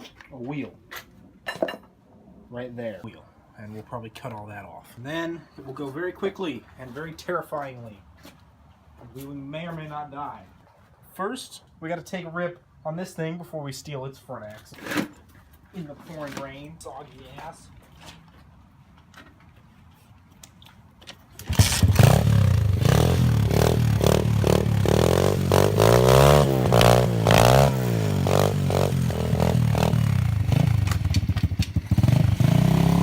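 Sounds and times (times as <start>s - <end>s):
small gasoline engine revving: 21.4s - 33.0s.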